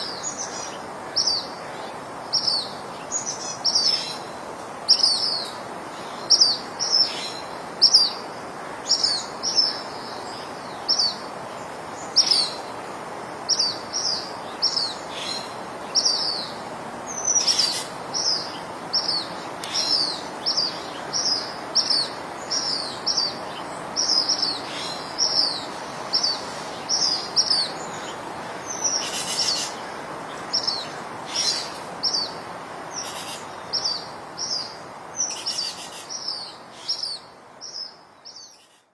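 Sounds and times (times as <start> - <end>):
soft steady background noise: 0.0 - 38.9
birds chirping: 13.4 - 38.9.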